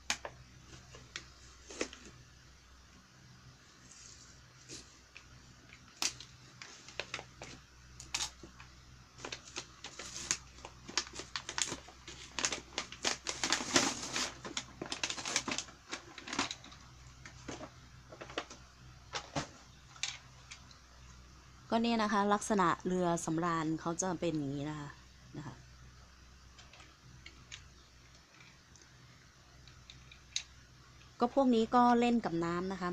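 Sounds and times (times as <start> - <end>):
plastic packaging crinkling: 9.2 - 18.6.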